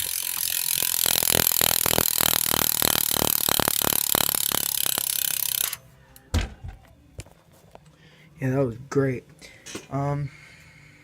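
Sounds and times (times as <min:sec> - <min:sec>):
bicycle hub ratcheting buzz: 0:00.0 - 0:05.8.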